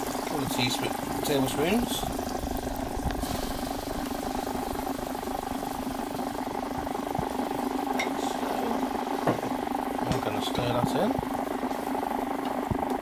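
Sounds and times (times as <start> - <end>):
mechanical hum whirring: 0.0 - 13.0.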